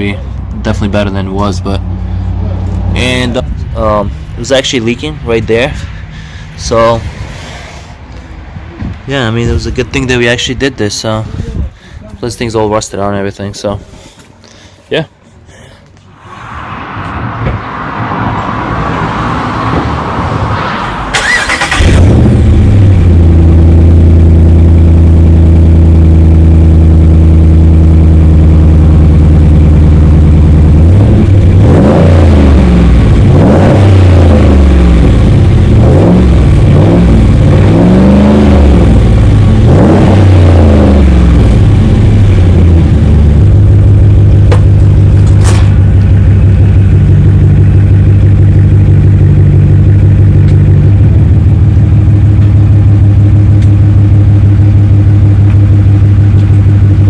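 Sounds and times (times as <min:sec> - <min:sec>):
engine revving: 0:16.1 - 0:57.0
truck engine cranking: 0:21.1 - 0:22.4
engine idling loudly: 0:41.3 - 0:57.0.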